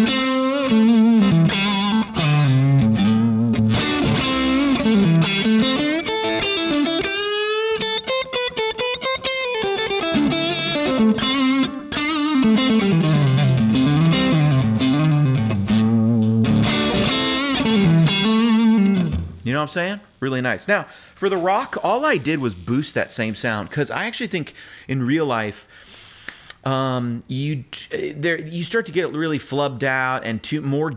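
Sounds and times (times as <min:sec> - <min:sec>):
overdriven electric guitar lead: 0:00.0 - 0:19.4.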